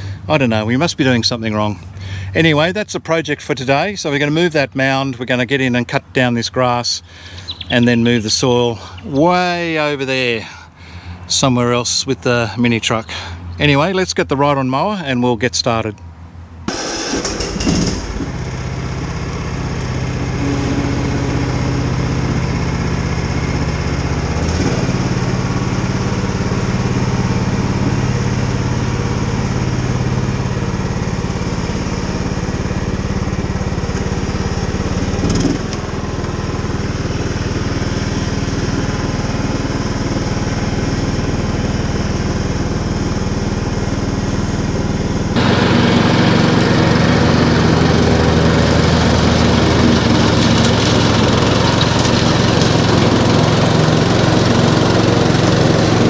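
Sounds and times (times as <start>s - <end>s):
mower engine running: 0.0s - 14.1s, 16.1s - 56.0s.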